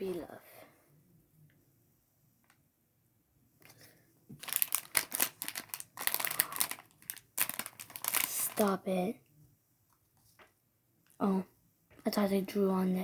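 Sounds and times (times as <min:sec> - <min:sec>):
plastic packaging crinkling: 0:04.3 - 0:08.8.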